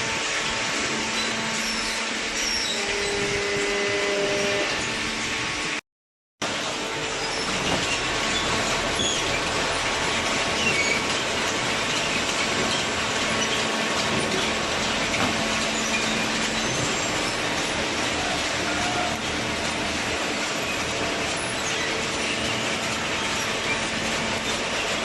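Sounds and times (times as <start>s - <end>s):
baler machine hum and rattle: 0.0s - 5.8s, 6.4s - 25.0s
high squeaks and creaks: 1.1s - 5.0s, 7.1s - 19.8s, 20.6s - 25.0s.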